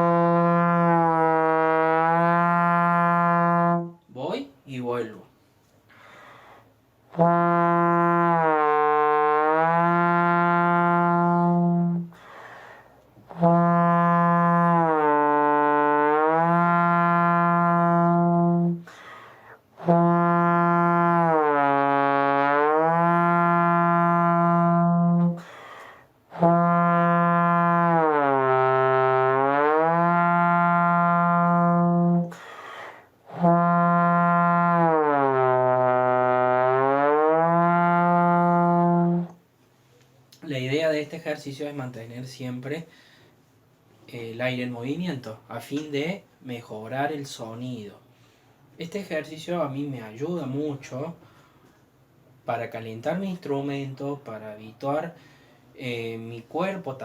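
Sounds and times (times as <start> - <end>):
trombone long tones: 0.0 - 4.0, 7.1 - 12.2, 13.3 - 18.9, 19.8 - 25.6, 26.3 - 32.5, 33.2 - 39.4.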